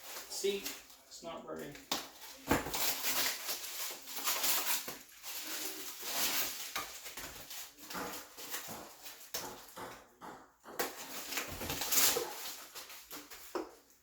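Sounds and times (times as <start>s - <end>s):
packaging rustling and crinkling: 0.0s - 9.7s, 10.9s - 14.0s.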